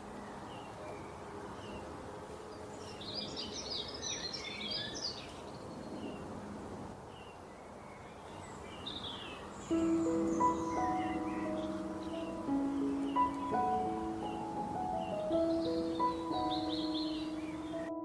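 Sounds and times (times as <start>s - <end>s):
birds chirping: 0.0s - 6.4s, 7.1s - 18.0s
steady background hiss: 0.0s - 18.0s
music: 9.7s - 18.0s.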